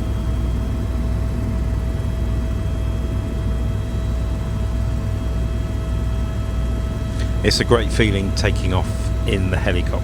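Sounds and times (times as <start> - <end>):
constant whine: 0.0 - 10.0
helicopter rotor and turbine drone: 0.0 - 10.0
airflow noise: 0.5 - 10.0.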